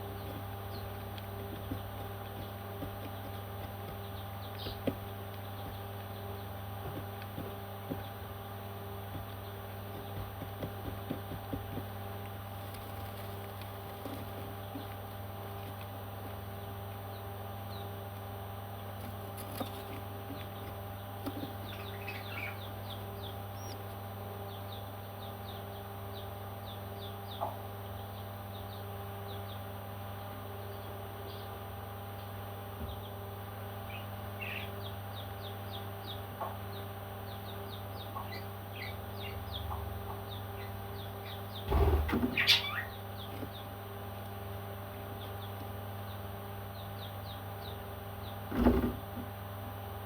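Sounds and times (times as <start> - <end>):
parrot chicks chirping: 0.0 - 18.4, 19.0 - 31.6, 32.2 - 49.1
steady low hum: 0.0 - 50.0.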